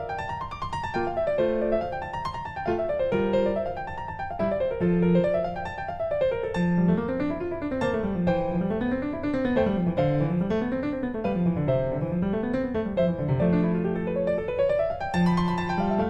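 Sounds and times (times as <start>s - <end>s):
piano melody: 0.0s - 16.0s.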